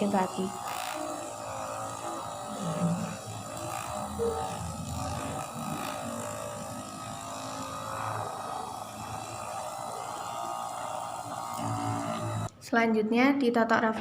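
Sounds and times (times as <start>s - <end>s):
electric massager buzzing: 0.0s - 12.6s.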